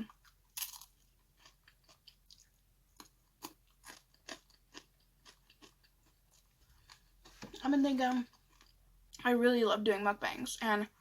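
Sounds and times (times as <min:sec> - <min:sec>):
chewing crunchy food: 0:00.0 - 0:09.2.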